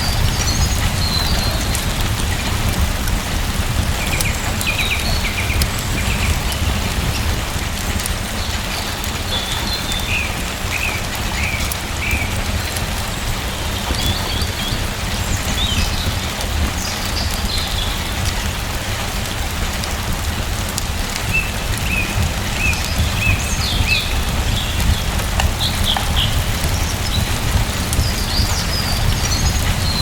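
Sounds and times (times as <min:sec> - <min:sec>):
steady rain falling: 0:00.0 - 0:30.0
bird chirping: 0:21.3 - 0:30.0.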